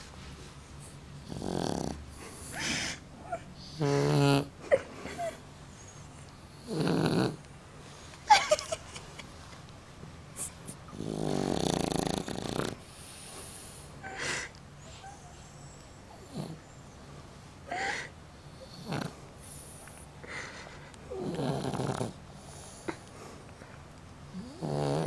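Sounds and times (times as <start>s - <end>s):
dog snoring: 1.2s - 2.7s, 3.7s - 4.5s, 6.5s - 7.4s, 10.4s - 13.7s, 16.2s - 16.8s, 18.5s - 19.8s, 21.1s - 22.8s, 24.3s - 25.0s
dog snorting: 1.2s - 3.0s, 6.6s - 7.4s, 10.4s - 13.4s, 21.2s - 22.8s, 24.3s - 25.0s.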